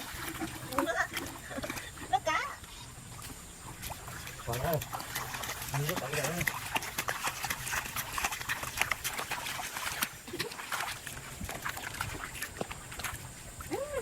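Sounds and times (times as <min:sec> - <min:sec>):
faint low animal calls: 0:13.0 - 0:14.0.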